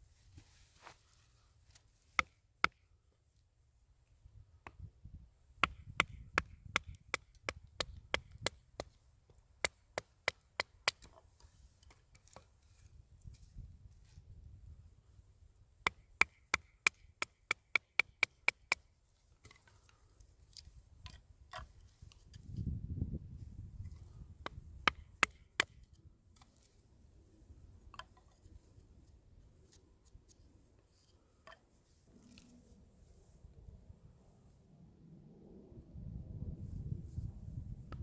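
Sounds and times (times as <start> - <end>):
blade chopping wood: 5.6 - 9.0, 15.9 - 18.8, 24.4 - 26.6.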